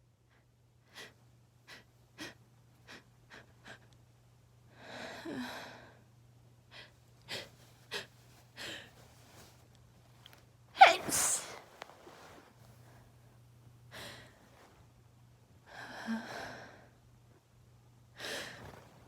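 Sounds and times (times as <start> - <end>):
breathy sigh: 10.8 - 11.5
person sniffing: 10.8 - 11.6.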